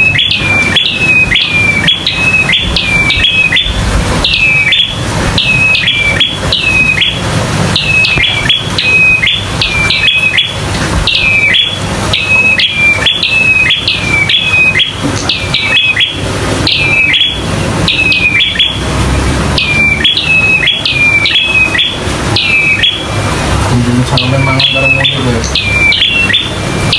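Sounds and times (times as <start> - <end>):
bird chirping rapidly: 0.0 - 26.9
steady low hum: 0.0 - 26.9.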